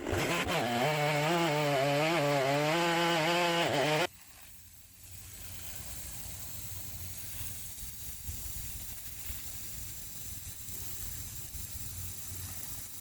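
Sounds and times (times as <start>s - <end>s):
steady background hiss: 4.0s - 13.0s.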